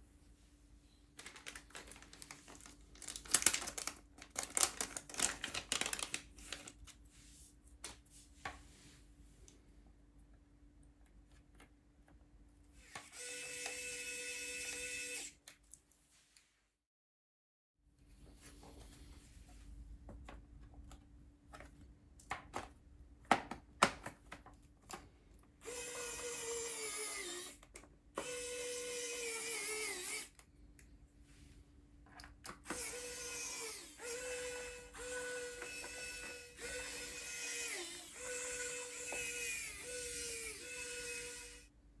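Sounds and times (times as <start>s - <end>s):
electric screwdriver whining: 12.8s - 15.4s, 25.6s - 27.6s, 28.2s - 30.3s, 32.6s - 41.7s.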